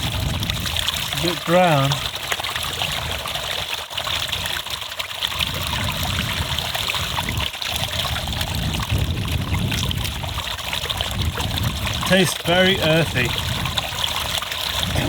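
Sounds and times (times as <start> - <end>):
stream water trickling over rocks: 0.0 - 15.0.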